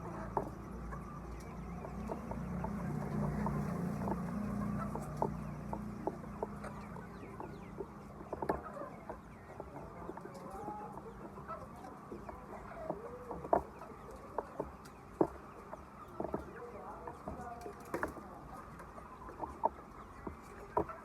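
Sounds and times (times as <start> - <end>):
hens clucking: 0.0 - 21.0.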